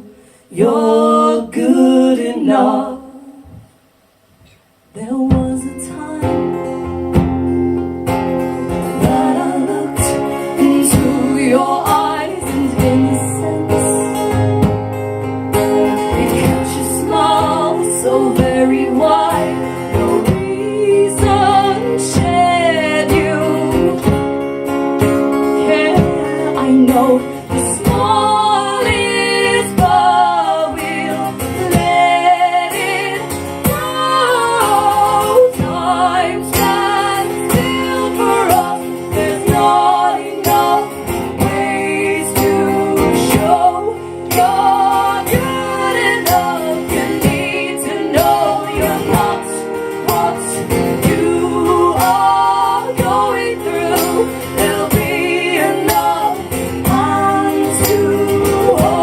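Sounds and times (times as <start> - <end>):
women singing: 0.0 - 3.6, 5.0 - 14.9, 15.5 - 59.0
strummed acoustic guitars: 5.3 - 59.0.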